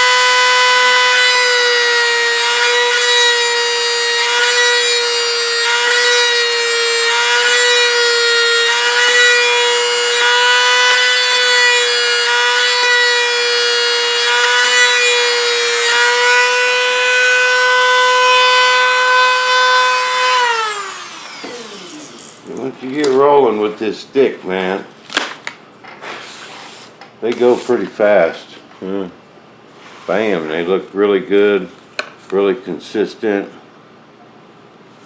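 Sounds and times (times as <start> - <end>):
rotary tool whining: 0.0 - 22.6
faint rubbing: 29.7 - 30.8.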